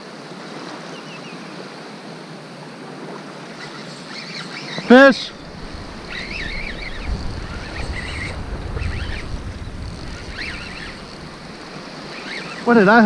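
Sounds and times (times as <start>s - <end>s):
surf washing: 0.0s - 13.0s
bird calling: 3.6s - 13.0s
wind buffeting microphone: 5.4s - 13.0s.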